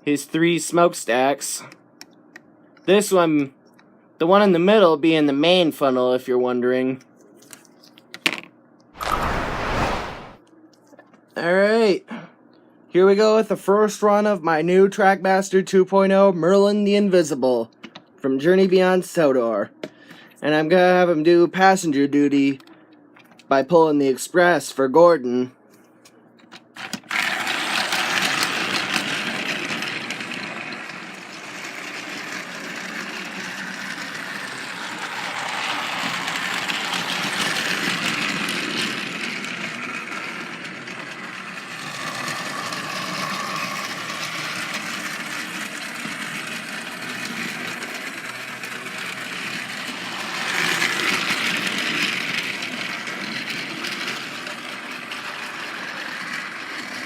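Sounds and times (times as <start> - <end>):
toy train whirring and rattling: 26.8 - 57.0.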